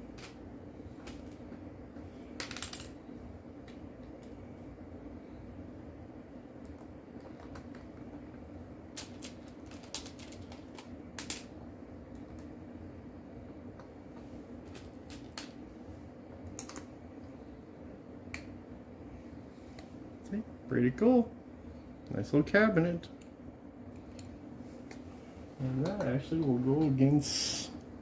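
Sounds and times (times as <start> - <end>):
steady low hum: 0.0 - 28.0
plastic bricks clicking: 9.0 - 11.5, 16.6 - 16.9.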